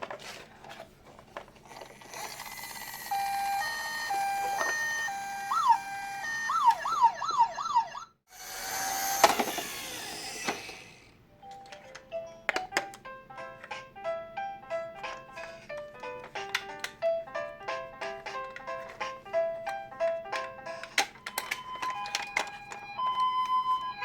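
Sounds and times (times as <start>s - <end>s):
toy electronic siren: 2.1s - 10.9s, 21.2s - 24.0s.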